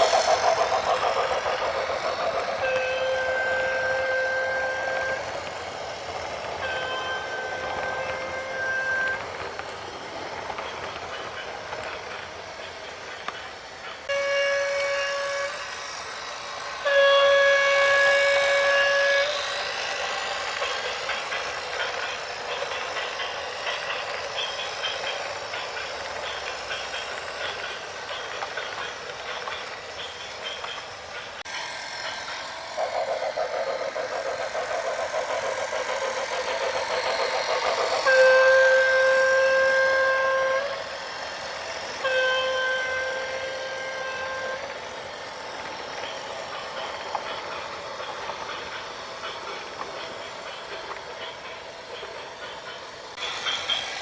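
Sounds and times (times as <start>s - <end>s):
vehicle horn blasts: 2.6s - 5.1s, 14.1s - 15.5s.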